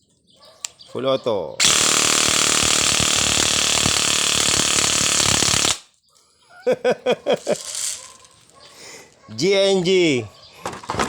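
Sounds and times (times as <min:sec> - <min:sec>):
airsoft gun rapid fire: 0:01.6 - 0:05.9.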